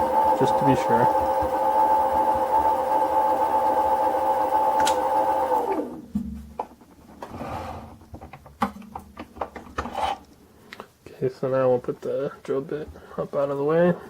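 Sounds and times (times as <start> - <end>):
mini lathe whining: 0.0 - 6.0.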